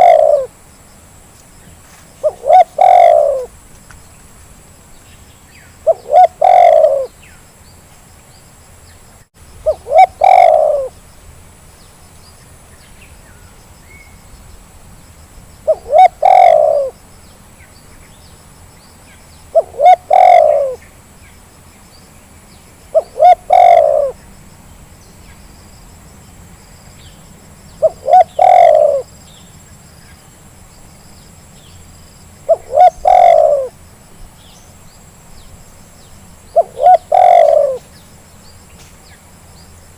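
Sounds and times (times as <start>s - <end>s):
dove cooing: 0.0s - 0.5s, 2.2s - 3.6s, 5.8s - 7.2s, 9.6s - 11.0s, 15.6s - 17.0s, 19.5s - 20.8s, 22.9s - 24.2s, 27.8s - 29.1s, 32.5s - 33.8s, 36.5s - 37.9s.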